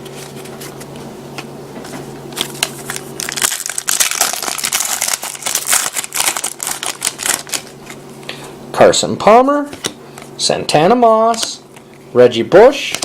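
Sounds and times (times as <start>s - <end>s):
wrapper crinkling and tearing: 2.4s - 8.0s.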